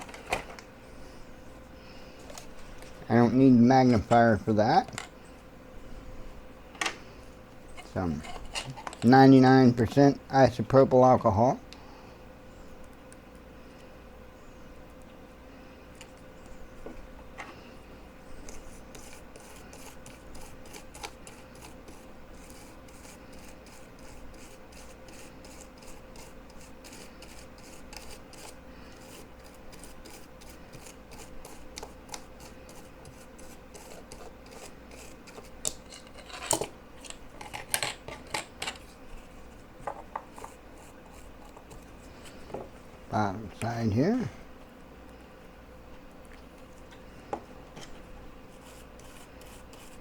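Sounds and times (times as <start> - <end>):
brush scrubbing circuit board: 18.6 - 35.5, 48.5 - 50.0.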